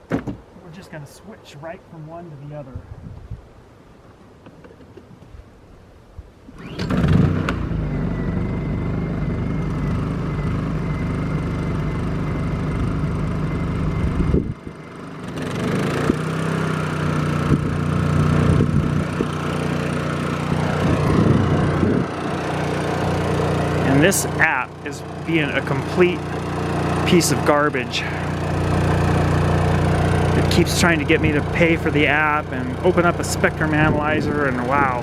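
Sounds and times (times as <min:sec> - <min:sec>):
portable generators running: 0:06.6 - 0:35.0.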